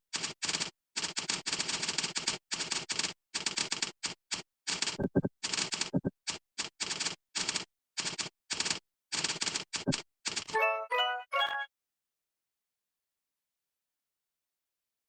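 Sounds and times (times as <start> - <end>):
keyboard typing: 0.2 - 10.8.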